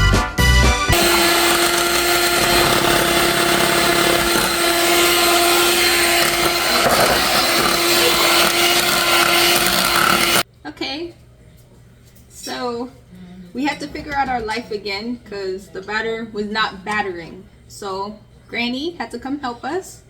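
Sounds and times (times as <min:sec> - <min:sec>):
music: 0:00.0 - 0:01.0
electric mixer whirring: 0:00.9 - 0:10.4.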